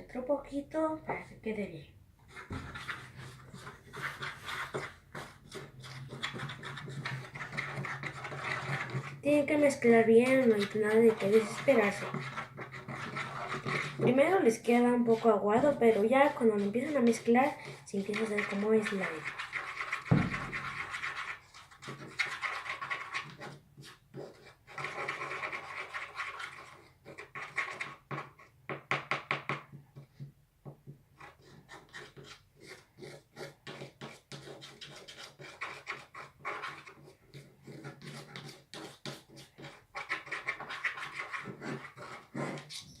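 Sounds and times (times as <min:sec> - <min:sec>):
spoon stirring thick mixture: 0:01.1 - 0:43.0.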